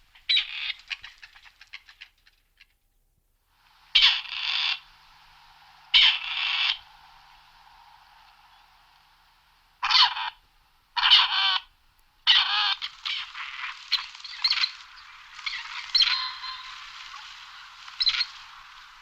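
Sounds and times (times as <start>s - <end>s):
partridge calling: 0.0s - 2.7s, 4.0s - 7.1s, 9.8s - 10.4s, 11.0s - 19.0s.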